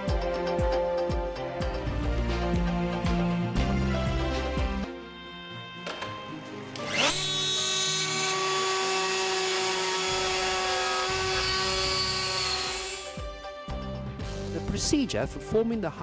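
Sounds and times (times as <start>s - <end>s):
electric router whining: 4.6s - 13.3s.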